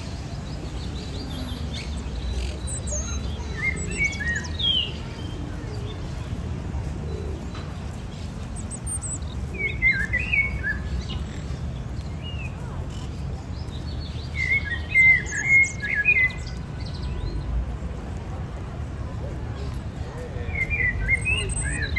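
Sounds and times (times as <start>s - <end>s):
steady low rumble: 0.0s - 21.7s
birds chirping: 0.0s - 21.9s.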